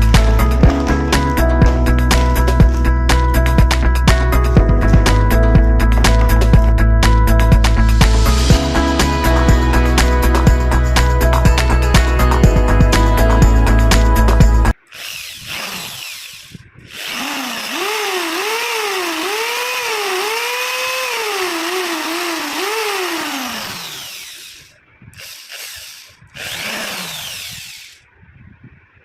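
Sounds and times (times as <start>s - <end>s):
music: 0.0s - 14.8s
hammer drill motor whine: 14.8s - 28.0s.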